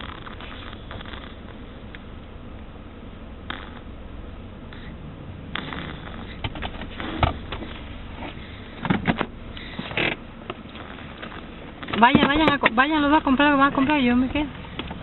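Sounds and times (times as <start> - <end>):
child snoring: 0.0 - 1.8, 3.5 - 4.0, 4.7 - 8.6, 10.7 - 11.6.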